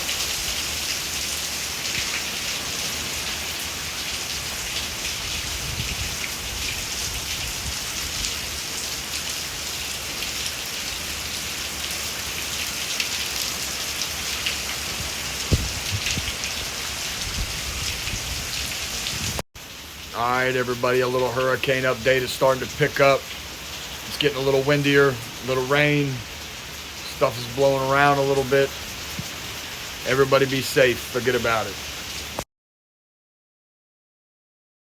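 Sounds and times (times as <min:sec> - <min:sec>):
steady rain falling: 0:00.0 - 0:32.4
wind on microphone: 0:05.1 - 0:08.6, 0:14.9 - 0:19.4
short thump: 0:15.5 - 0:16.3.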